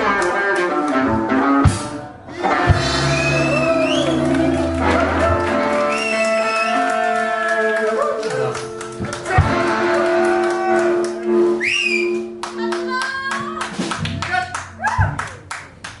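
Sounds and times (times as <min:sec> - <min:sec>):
rockabilly band with guitar: 0:00.0 - 0:07.1, 0:08.3 - 0:14.4
whistle rising and falling: 0:02.9 - 0:04.6, 0:05.8 - 0:06.9, 0:11.6 - 0:12.2.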